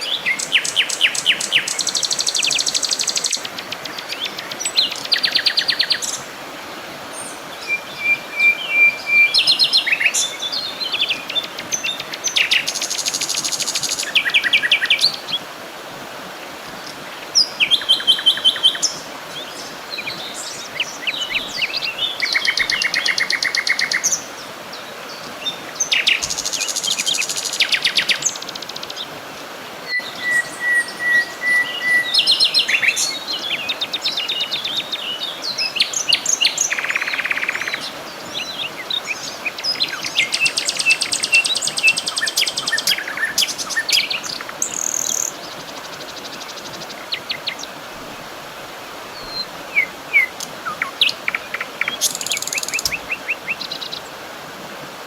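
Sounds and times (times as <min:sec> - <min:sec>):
faint steady hiss: 0:00.0 - 0:55.0
songbirds trilling and chirping: 0:07.0 - 0:15.5, 0:16.5 - 0:29.2, 0:29.9 - 0:54.3.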